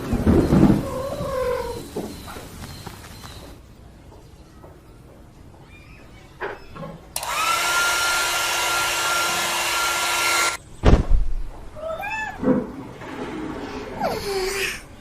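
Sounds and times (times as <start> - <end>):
appliance motor whirring: 7.2 - 10.6
heavy thump: 10.8 - 11.6
cat meowing: 11.8 - 12.4.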